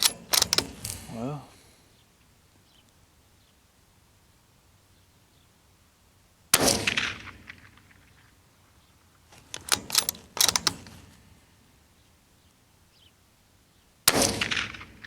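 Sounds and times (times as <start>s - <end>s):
rifle action metallic clacks: 0.0s - 1.2s, 9.4s - 11.2s
rifle shot: 0.0s - 1.2s, 6.5s - 8.1s, 14.1s - 15.0s.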